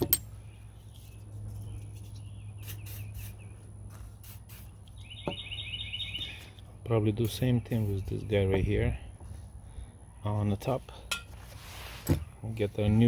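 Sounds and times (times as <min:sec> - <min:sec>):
small birds chirping: 0:00.0 - 0:10.8.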